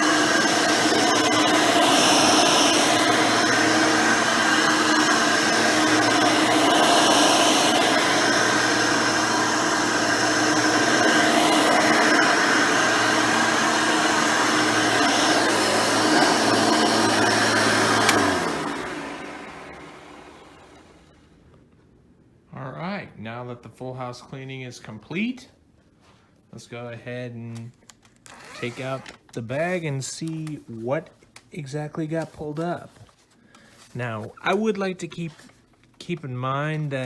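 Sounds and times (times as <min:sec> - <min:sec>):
upright vacuum cleaner running: 0:00.0 - 0:21.1
switch clicking off: 0:17.8 - 0:18.3.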